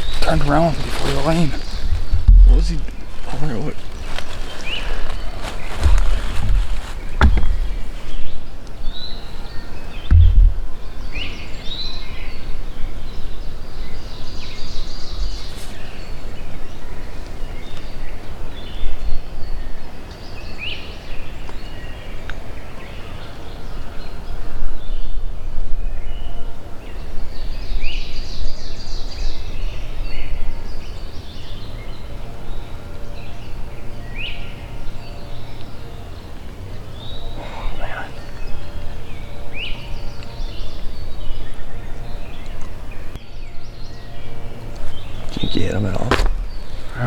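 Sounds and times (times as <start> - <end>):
wind on microphone: 0.0 - 3.2, 10.0 - 11.2
bird rising chirp: 27.9 - 47.0.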